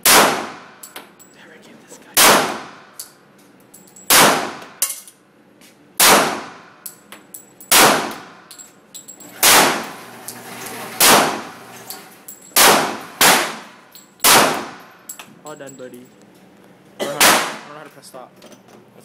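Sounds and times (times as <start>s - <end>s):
pistol shots with ringing echo: 0.0s - 0.9s, 2.2s - 3.0s, 4.0s - 4.9s, 6.0s - 6.8s, 7.7s - 8.5s, 9.4s - 9.9s, 11.0s - 11.4s, 12.5s - 14.9s, 17.2s - 17.7s.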